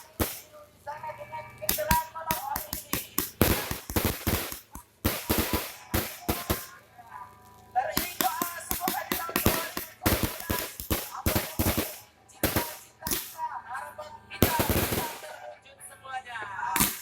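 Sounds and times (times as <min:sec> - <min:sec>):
fireworks bangs and crackles: 0:00.0 - 0:00.6, 0:01.7 - 0:06.8, 0:07.9 - 0:13.5, 0:14.4 - 0:15.4, 0:16.8 - 0:17.0.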